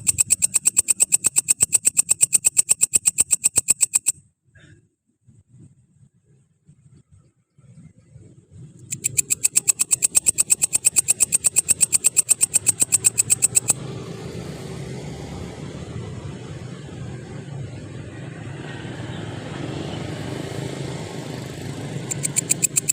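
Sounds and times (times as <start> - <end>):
grasshopper high-pitched pulses: 0.0 - 4.1, 8.8 - 13.8, 21.5 - 22.9
low engine hum: 7.8 - 22.9.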